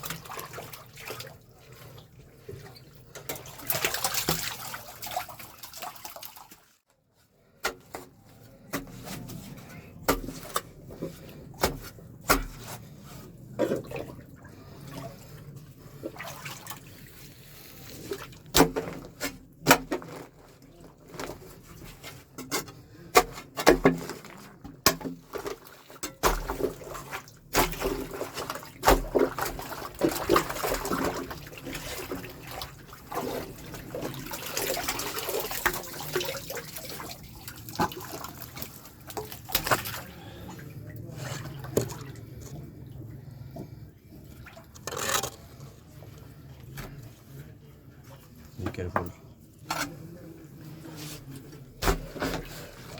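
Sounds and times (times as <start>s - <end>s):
sewage water splashing: 0.0s - 6.8s, 8.7s - 22.3s, 23.1s - 43.6s.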